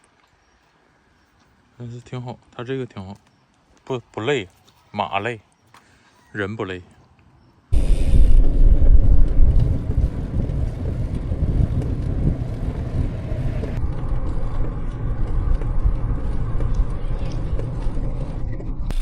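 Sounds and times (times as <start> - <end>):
wind and road noise on microphone: 7.7 - 19.0.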